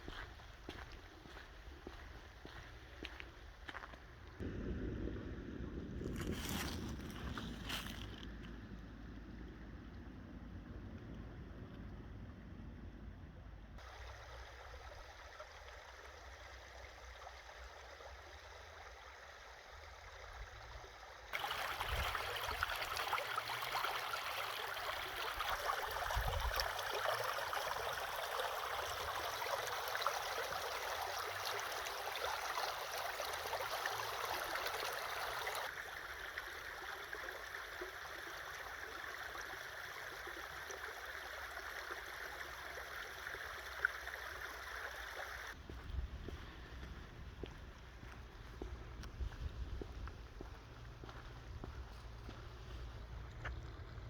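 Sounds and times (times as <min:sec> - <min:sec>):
running water rushing: 0:13.8 - 0:45.6.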